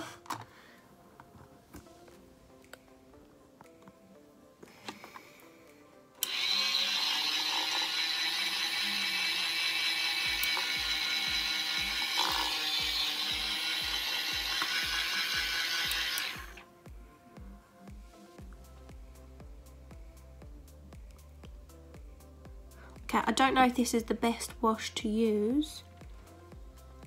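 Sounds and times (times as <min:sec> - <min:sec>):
toy washing machine motor whirring: 0:06.2 - 0:16.6.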